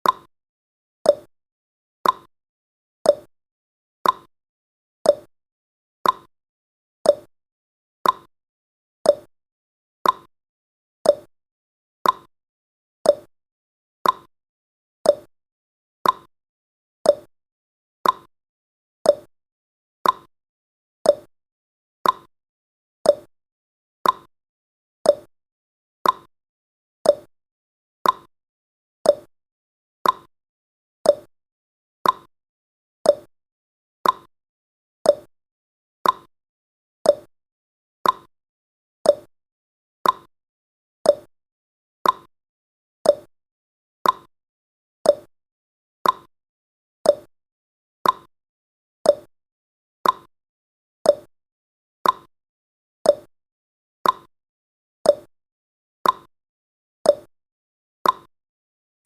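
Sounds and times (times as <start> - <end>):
timer ticking: 0.0 - 0.3, 1.1 - 1.3, 2.0 - 2.3, 3.1 - 3.3, 4.0 - 4.3, 5.1 - 5.3, 6.0 - 6.3, 7.1 - 7.3, 8.0 - 8.3, 9.1 - 9.3, 10.0 - 10.3, 11.1 - 11.3, 12.0 - 12.3, 13.1 - 13.3, 14.0 - 14.3, 15.1 - 15.3, 16.0 - 16.3, 17.1 - 17.3, 18.0 - 18.3, 19.1 - 19.3, 20.0 - 20.3, 21.1 - 21.3, 22.0 - 22.3, 23.1 - 23.3, 24.0 - 24.3, 25.1 - 25.3, 26.0 - 26.3, 27.0 - 27.3, 28.0 - 28.3, 29.1 - 29.3, 30.0 - 30.3, 31.1 - 31.3, 32.0 - 32.3, 33.1 - 33.3, 34.0 - 34.3, 35.1 - 35.3, 36.0 - 36.3, 37.1 - 37.3, 38.0 - 38.3, 39.1 - 39.3, 40.0 - 40.3, 41.1 - 41.3, 42.0 - 42.3, 43.0 - 43.3, 44.0 - 44.3, 45.1 - 45.3, 46.0 - 46.3, 47.1 - 47.3, 48.0 - 48.3, 49.1 - 49.3, 50.0 - 50.3, 51.1 - 51.3, 52.0 - 52.3, 53.1 - 53.3, 54.0 - 54.3, 55.1 - 55.3, 56.0 - 56.3, 57.1 - 57.3, 58.0 - 58.3.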